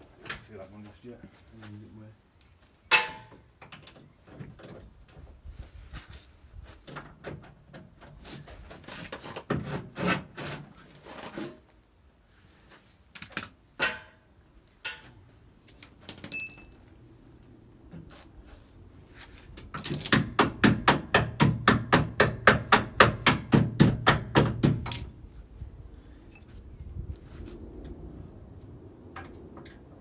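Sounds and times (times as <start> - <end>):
metallic clanks of tools: 15.8 - 16.8
ringing metal clink: 16.1 - 16.8.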